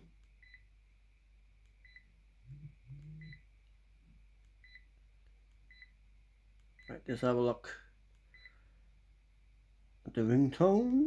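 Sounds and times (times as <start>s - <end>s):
faint electronic beeps: 1.8s - 3.5s, 8.3s - 8.6s.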